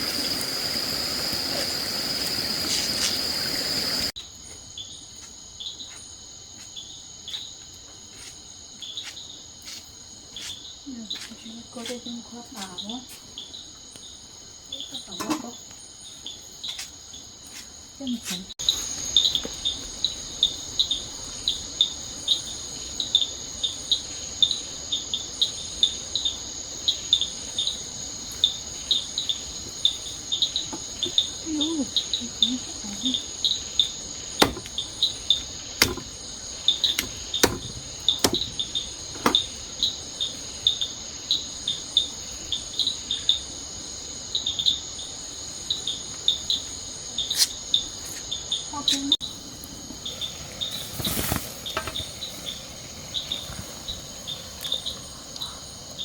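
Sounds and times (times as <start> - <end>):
insect chirps: 0.0 - 56.0
insect high-pitched whine: 0.0 - 56.0
sharp clicks: 36.8 - 39.4.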